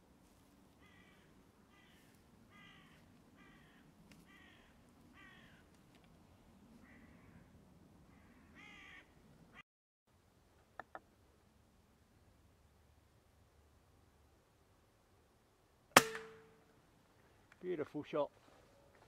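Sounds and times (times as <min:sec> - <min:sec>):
crow cawing: 0:00.8 - 0:05.7, 0:06.8 - 0:07.5, 0:08.1 - 0:09.2.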